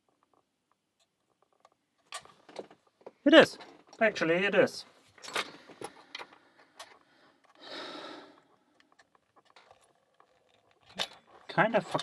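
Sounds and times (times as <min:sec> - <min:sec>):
padlock and picking tools clicking: 0:05.2 - 0:07.6, 0:08.4 - 0:12.0
person exhaling: 0:07.6 - 0:08.4.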